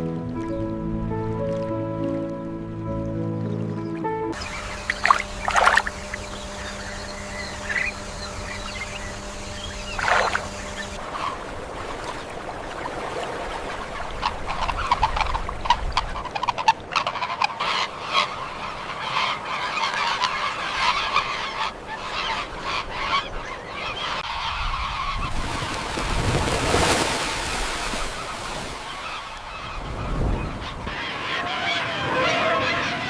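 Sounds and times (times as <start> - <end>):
flock of birds calling: 4.4 - 11.4, 14.0 - 33.0.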